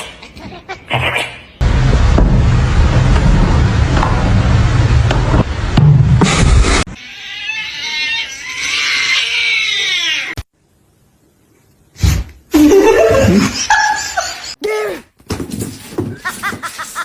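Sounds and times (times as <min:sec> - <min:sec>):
loud rushing noise: 0:01.6 - 0:07.0
cat meowing: 0:07.0 - 0:10.4.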